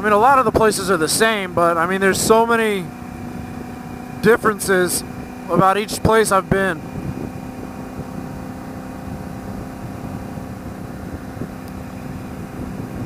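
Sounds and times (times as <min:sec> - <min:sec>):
motorcycle engine cruising: 0:00.0 - 0:13.0.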